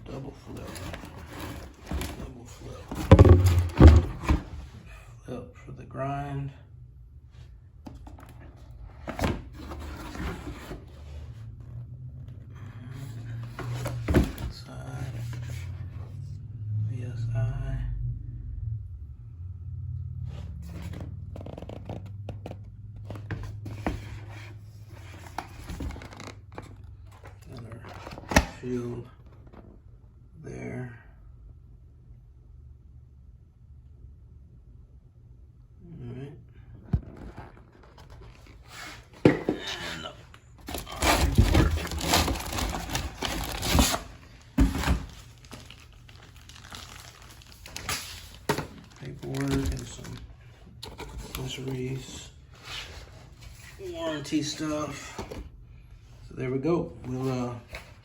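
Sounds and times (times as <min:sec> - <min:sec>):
packaging rustling and scraping: 0:00.0 - 0:04.8, 0:07.9 - 0:11.8, 0:12.9 - 0:16.1, 0:20.6 - 0:28.5, 0:37.0 - 0:55.4
packaging crinkling and rustling: 0:40.6 - 0:51.5.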